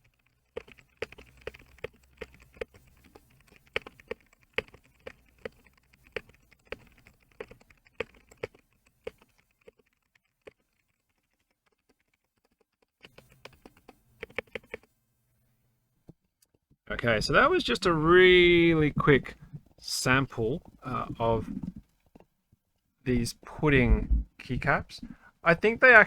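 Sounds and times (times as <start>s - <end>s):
background hum: 0.0s - 26.0s.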